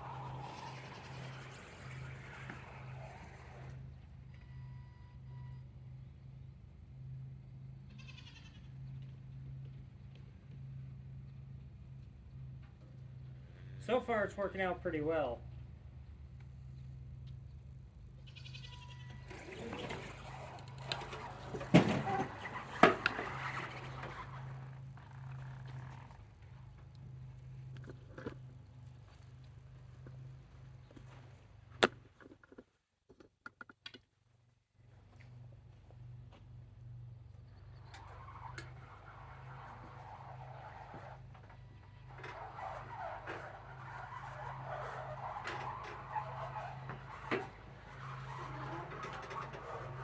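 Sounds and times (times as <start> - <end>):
motor humming: 0.0 - 4.1
scraping and clattering: 19.3 - 26.2, 37.8 - 50.0.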